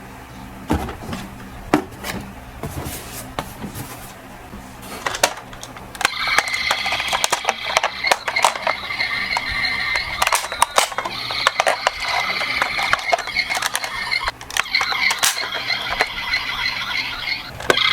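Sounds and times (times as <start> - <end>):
toy vehicles clicking and knocking: 5.0 - 16.4, 17.5 - 17.9
steady high-pitched tone: 6.0 - 17.9.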